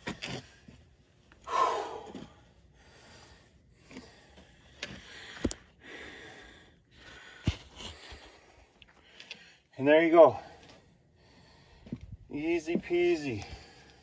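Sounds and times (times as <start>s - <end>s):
man breathing hard: 1.4s - 9.7s, 10.4s - 12.3s, 13.3s - 14.0s.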